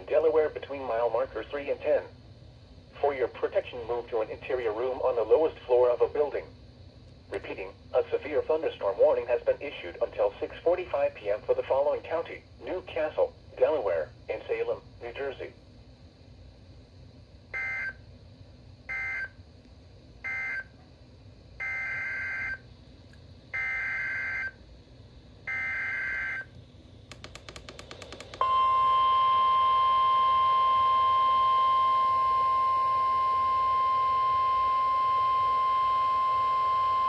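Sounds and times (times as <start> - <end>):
weather radio alarm tone: 17.6 - 18.0, 18.9 - 19.3, 21.6 - 22.6, 23.6 - 24.6, 25.5 - 26.5, 28.4 - 37.0
rapid clicking: 27.1 - 28.4.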